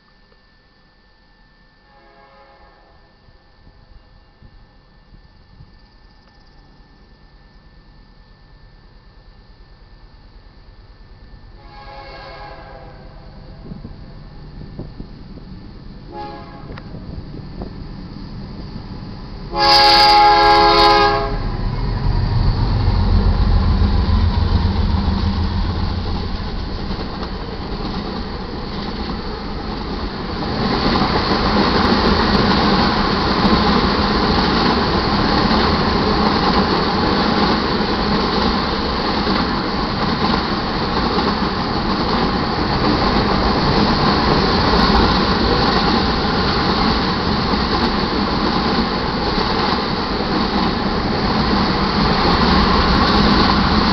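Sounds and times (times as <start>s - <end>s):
diesel locomotive horn blast: 1.8s - 3.1s, 11.5s - 13.8s, 16.1s - 17.1s, 19.5s - 25.0s
diesel locomotives rumbling by: 1.8s - 53.9s.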